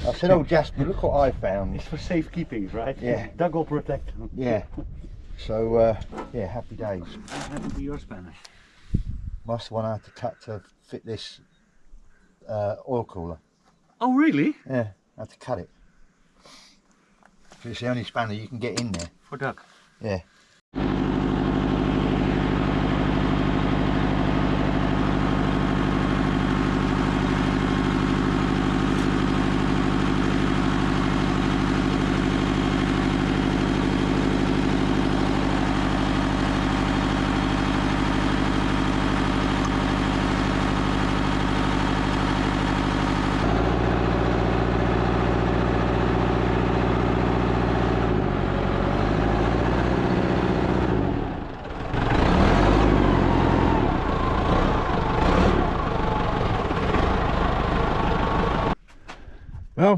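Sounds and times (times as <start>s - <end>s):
backhoe engine running: 20.8s - 58.8s.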